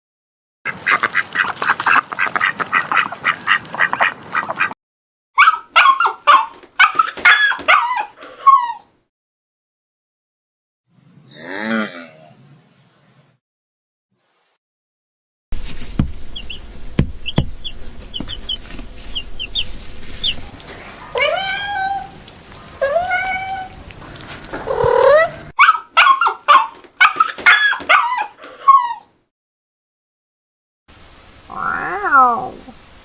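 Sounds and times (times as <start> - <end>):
dog whimpering: 5.4 - 8.9, 24.7 - 29.1
dog yipping and barking: 5.4 - 8.9, 21.1 - 22.2, 24.7 - 29.1
knocks: 15.9 - 18.4.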